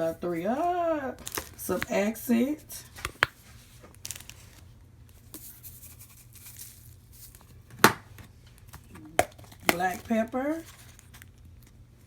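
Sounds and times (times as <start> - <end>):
plastic bag rustling: 0.0 - 2.1.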